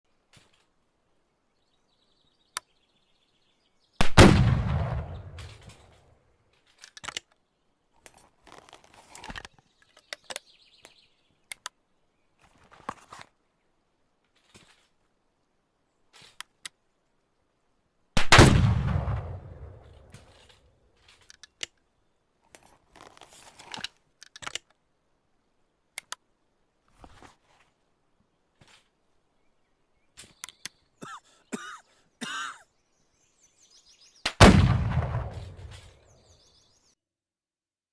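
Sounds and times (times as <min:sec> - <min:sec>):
rifle shots with booming echo: 0:04.0 - 0:06.0, 0:18.2 - 0:20.3, 0:34.3 - 0:36.1
rifle action clicks and knocks: 0:05.2 - 0:07.4, 0:19.8 - 0:21.8, 0:22.5 - 0:24.8.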